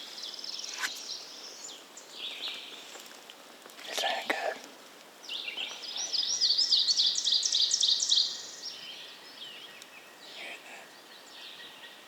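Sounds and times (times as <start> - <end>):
songbird chirps and trills: 5.2 - 12.0.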